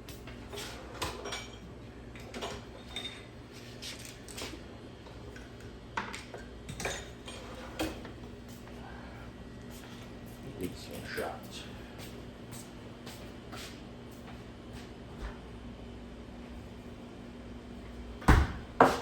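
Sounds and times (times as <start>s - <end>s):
steady low hum: 4.5s - 19.0s.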